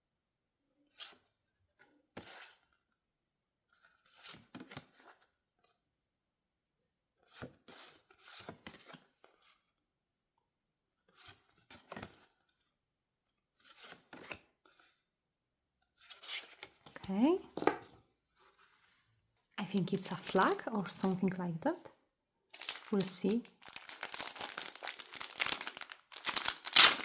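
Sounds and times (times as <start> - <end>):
packaging being torn and rustled: 19.8 - 21.2, 22.6 - 27.0.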